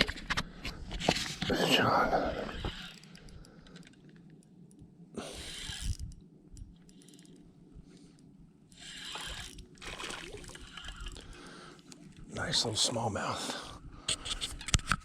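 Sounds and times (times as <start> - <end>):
water splashing and sloshing: 6.7 - 12.8.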